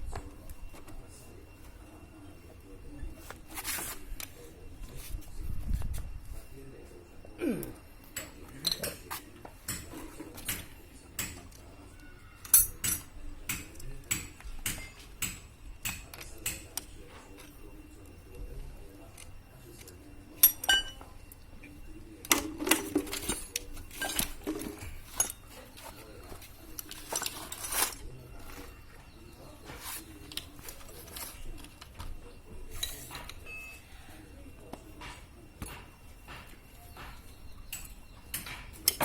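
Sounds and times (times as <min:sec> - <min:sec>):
metal tools clinking: 0:07.7 - 0:11.6, 0:12.4 - 0:18.0, 0:19.0 - 0:21.5, 0:22.2 - 0:34.1, 0:35.0 - 0:39.0.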